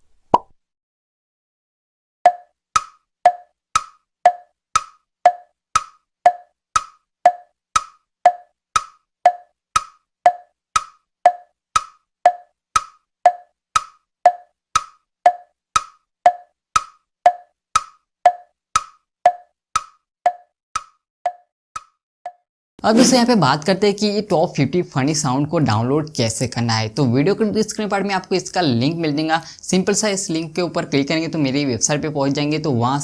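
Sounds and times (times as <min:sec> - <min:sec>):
wood-block tick-tock knocks: 0:02.3 - 0:22.4.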